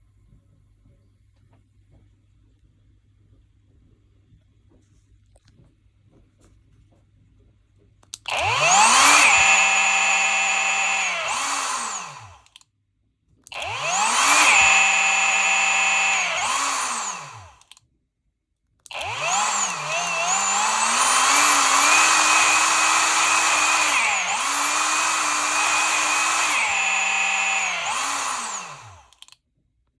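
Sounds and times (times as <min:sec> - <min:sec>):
electric chainsaw motor whining: 0:08.3 - 0:12.4, 0:13.6 - 0:17.6, 0:18.9 - 0:29.2.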